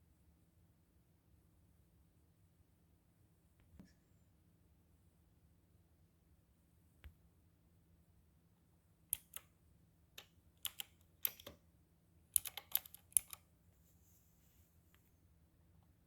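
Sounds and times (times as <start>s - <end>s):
mechanical keyboard keys clicking: 9.2s - 9.4s, 10.2s - 11.6s, 12.4s - 13.4s.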